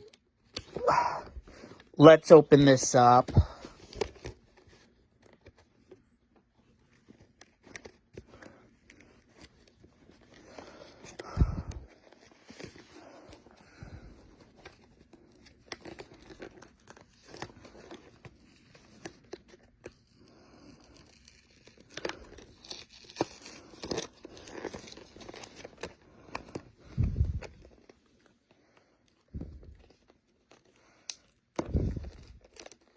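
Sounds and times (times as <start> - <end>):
packaging crinkling and tearing: 0.0 - 32.9.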